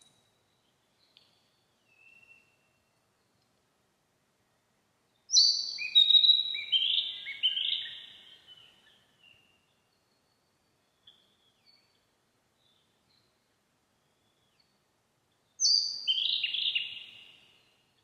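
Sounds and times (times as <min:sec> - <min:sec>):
bird whistling song: 0:01.9 - 0:02.8, 0:05.3 - 0:09.4, 0:15.6 - 0:17.7.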